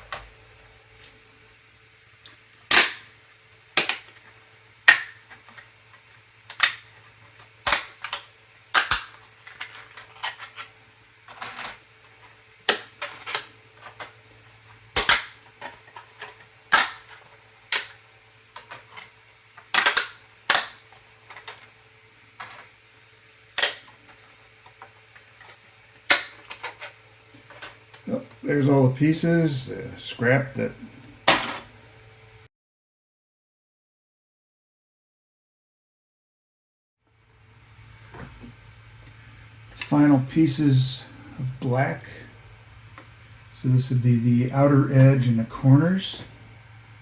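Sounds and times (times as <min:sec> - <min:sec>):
plastic pieces snapping: 0:02.3 - 0:03.1, 0:03.8 - 0:05.6, 0:06.5 - 0:07.0, 0:07.6 - 0:10.7, 0:12.6 - 0:14.2, 0:14.9 - 0:18.0, 0:18.6 - 0:21.7, 0:23.6 - 0:24.1, 0:25.4 - 0:27.8.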